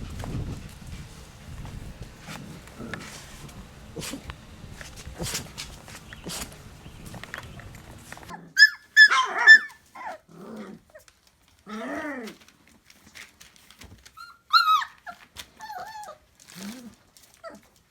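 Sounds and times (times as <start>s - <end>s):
puppy yipping and whining: 8.3s - 10.3s, 14.1s - 16.2s.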